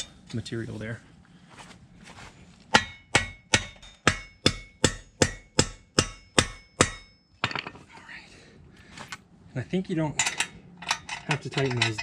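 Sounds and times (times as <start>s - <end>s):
hammer striking steel pin: 2.7s - 7.7s.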